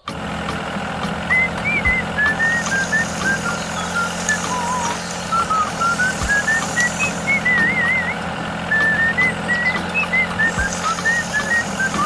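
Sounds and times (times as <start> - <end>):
whirring motor hum: 0.0 - 12.0
person whistling a tune: 1.3 - 12.0.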